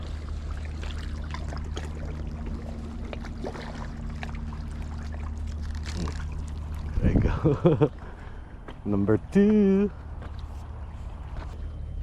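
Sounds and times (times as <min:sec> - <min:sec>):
water splashes: 0:00.0 - 0:08.1
motor humming low: 0:00.0 - 0:12.0.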